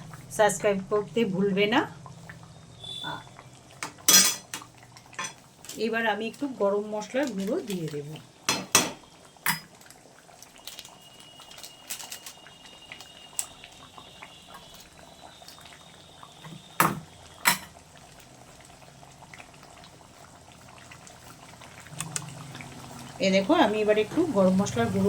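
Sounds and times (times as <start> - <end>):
curry bubbling in a pan: 0.0 - 25.0.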